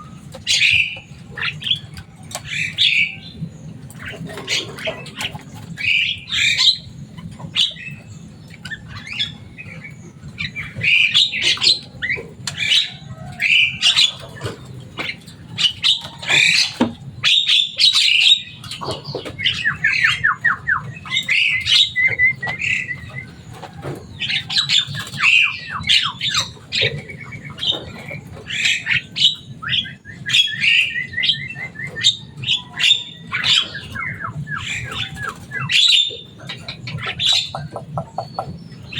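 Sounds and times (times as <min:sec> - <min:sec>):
myna squawking and chattering: 0:24.1 - 0:38.9.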